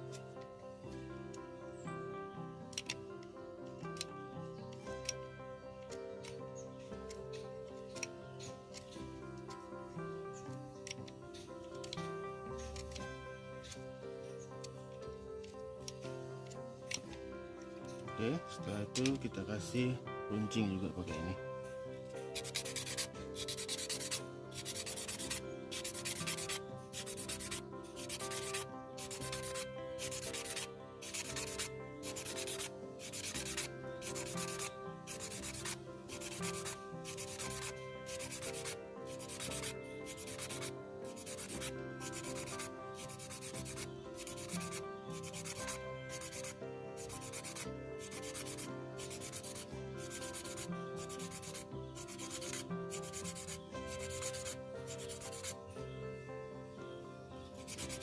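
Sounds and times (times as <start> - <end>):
chopstick scraping on abrasive: 22.4 - 55.6, 57.6 - 58.0.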